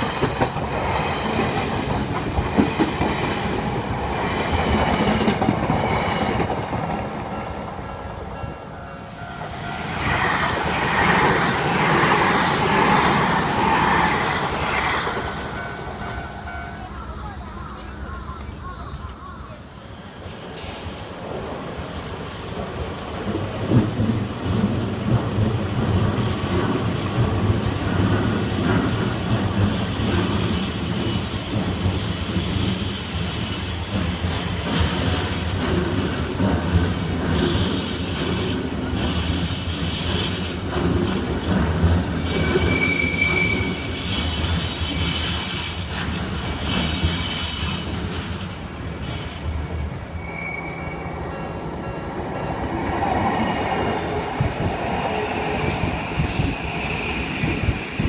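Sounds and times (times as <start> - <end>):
train wheels rumbling on track: 0.0 - 58.0
high-pitched wheel squeal: 37.5 - 40.6, 42.3 - 46.0, 46.6 - 48.2, 50.2 - 51.2.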